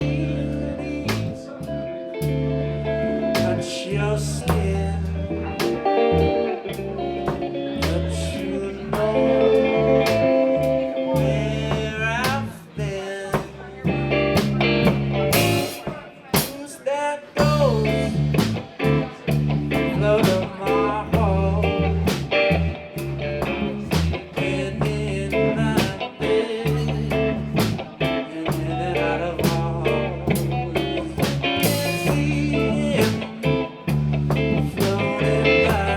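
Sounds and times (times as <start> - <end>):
electric guitar lead: 0.0 - 16.6, 17.2 - 35.9
bass line: 0.0 - 16.7, 17.4 - 35.9
steady drum beat: 3.4 - 3.8, 4.5 - 9.3, 10.0 - 12.6, 13.3 - 16.7, 17.4 - 35.9.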